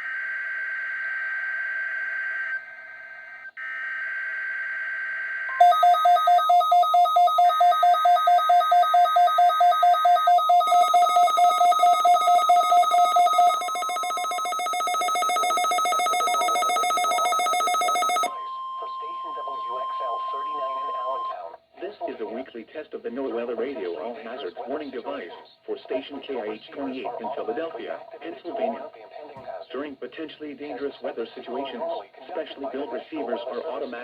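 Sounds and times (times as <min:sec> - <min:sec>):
steady alarm tone: 0:05.6 - 0:21.2
alarm beeping rapidly: 0:05.6 - 0:21.3.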